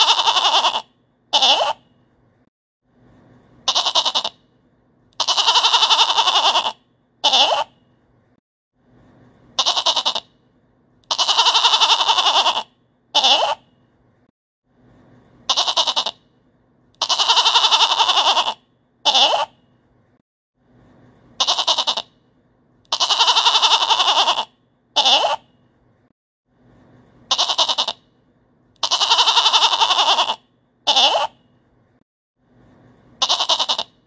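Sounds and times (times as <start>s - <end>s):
goat bleating: 0.0s - 1.8s, 3.6s - 4.4s, 5.2s - 7.7s, 9.6s - 10.3s, 11.1s - 13.6s, 15.5s - 16.2s, 17.0s - 19.5s, 21.4s - 22.1s, 22.9s - 25.4s, 27.3s - 28.0s, 28.8s - 31.3s, 33.2s - 33.9s.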